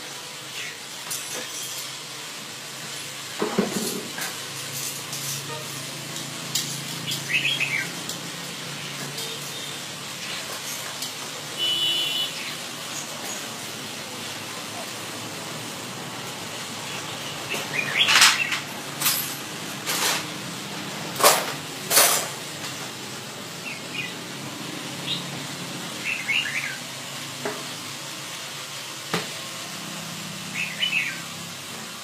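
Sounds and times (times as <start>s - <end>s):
sharp noisy bird bursts: 7.0s - 8.0s, 11.6s - 13.5s, 16.8s - 18.6s, 25.9s - 26.9s, 30.4s - 31.4s
bird chirps: 17.5s - 18.5s.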